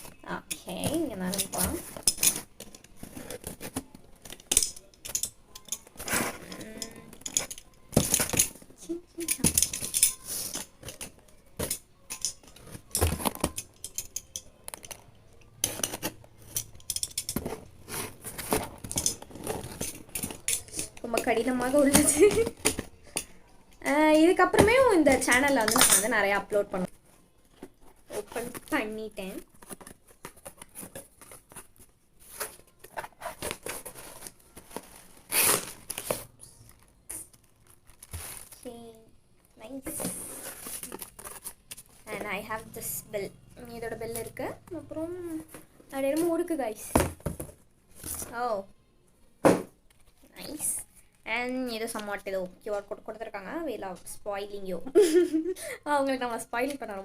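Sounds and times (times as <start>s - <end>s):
packaging crinkling and tearing: 32.7s - 38.7s.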